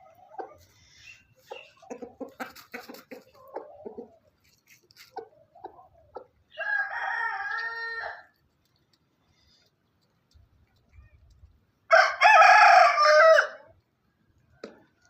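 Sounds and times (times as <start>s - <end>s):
chickens clucking: 0.0s - 6.6s
rooster crowing: 6.6s - 8.3s, 11.9s - 13.6s.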